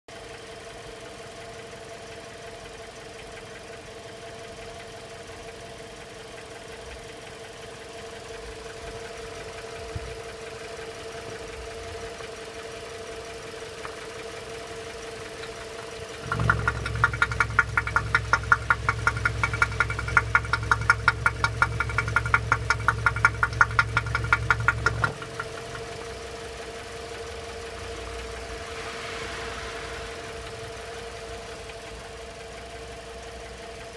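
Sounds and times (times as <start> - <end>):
car engine idling: 0.1 - 33.9
rapid engine knocking: 3.2 - 28.0.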